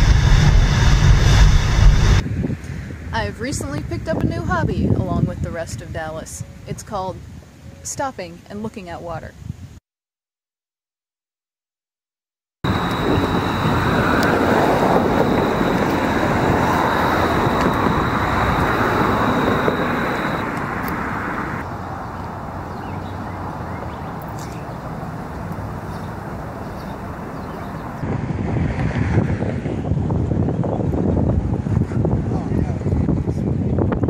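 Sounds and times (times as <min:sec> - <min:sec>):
thin high whine: 0:00.0 - 0:02.2, 0:12.6 - 0:20.6
steady rushing noise: 0:00.0 - 0:03.2, 0:12.6 - 0:22.7.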